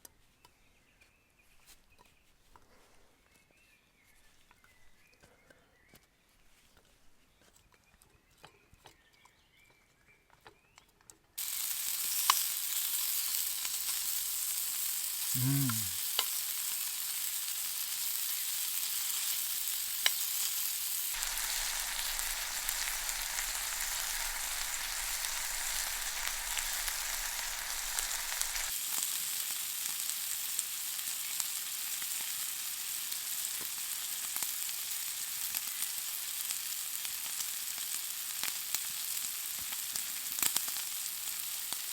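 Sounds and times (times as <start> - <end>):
food sizzling in a pan: 11.4 - 41.9
sharp crackles: 21.1 - 28.8.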